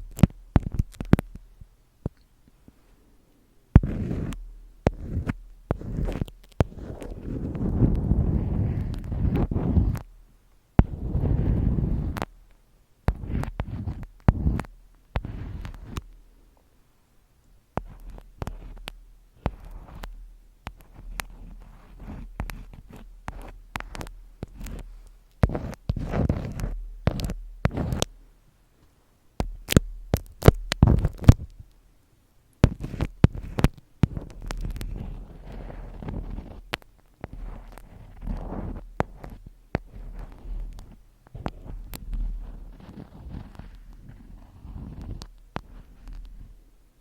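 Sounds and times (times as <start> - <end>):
sharp taps and clicks: 0.0 - 2.3, 17.8 - 28.1, 29.4 - 31.8, 32.6 - 44.2
rubbing and rustling: 3.8 - 10.2, 10.8 - 16.3, 17.8 - 28.2, 29.4 - 31.8, 32.6 - 46.8.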